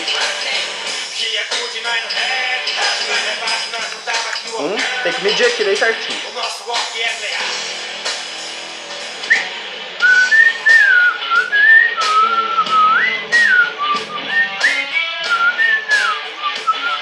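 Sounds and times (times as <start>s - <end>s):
rock song with steady beat: 0.0s - 17.0s
person whistling a melody: 9.3s - 17.0s.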